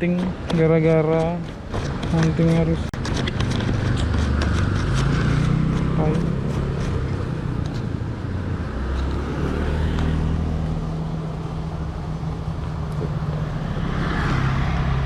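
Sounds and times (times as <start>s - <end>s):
passing traffic road noise: 0.0s - 15.0s
vehicle engine humming: 0.0s - 15.0s.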